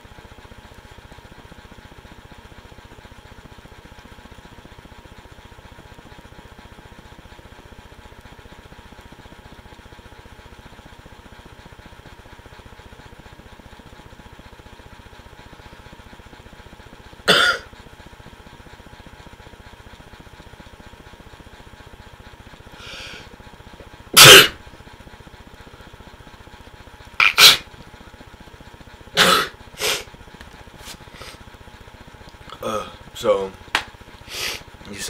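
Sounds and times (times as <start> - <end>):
low background hum: 0.0 - 35.0.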